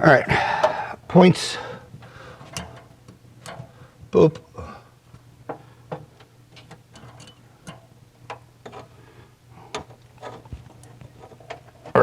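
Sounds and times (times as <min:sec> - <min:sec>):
small metal parts and tools clicking: 0:06.5 - 0:08.9.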